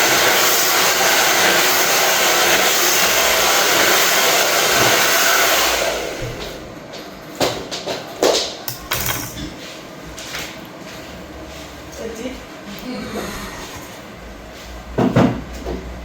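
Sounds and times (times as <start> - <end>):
hair dryer blowing: 0.0 - 6.6.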